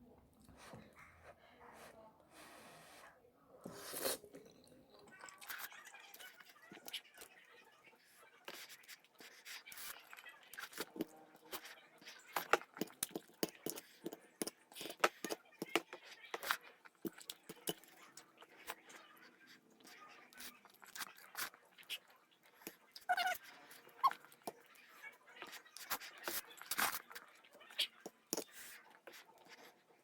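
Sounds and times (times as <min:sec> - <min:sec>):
person chewing and slurping noodles: 0:08.5 - 0:24.8.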